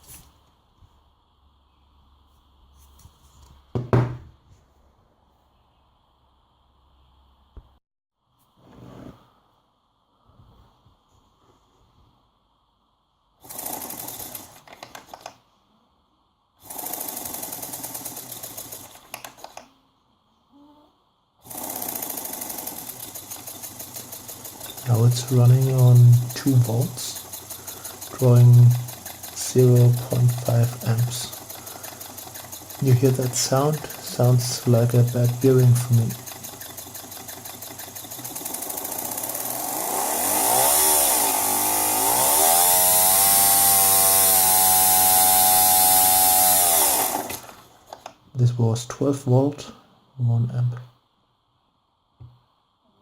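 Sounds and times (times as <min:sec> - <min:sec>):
fuel pump motor chattering: 0:21.5 - 0:48.0.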